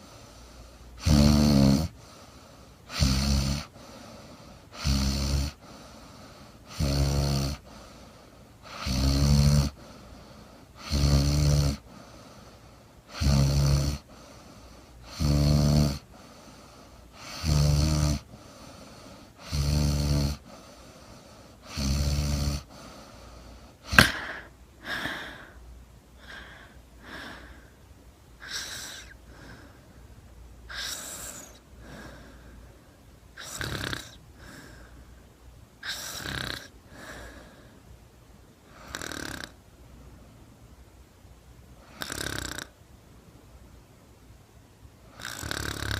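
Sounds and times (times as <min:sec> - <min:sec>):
woman snoring: 0:00.0 - 0:02.1, 0:02.8 - 0:07.7, 0:08.6 - 0:10.1, 0:10.7 - 0:12.2, 0:13.1 - 0:14.1, 0:14.9 - 0:16.2, 0:17.1 - 0:20.7, 0:21.5 - 0:25.6, 0:28.4 - 0:29.7, 0:30.7 - 0:32.4, 0:33.4 - 0:35.0, 0:35.8 - 0:37.6, 0:38.7 - 0:39.6, 0:41.9 - 0:42.8, 0:45.1 - 0:45.9
soft irregular breathing: 0:00.0 - 0:38.0, 0:38.6 - 0:40.5
sharp snort: 0:01.0 - 0:02.0, 0:02.9 - 0:03.7, 0:13.1 - 0:14.0, 0:15.0 - 0:16.0, 0:23.8 - 0:24.5, 0:28.4 - 0:29.6, 0:30.7 - 0:32.2, 0:33.4 - 0:34.8, 0:35.8 - 0:37.3, 0:45.2 - 0:45.9.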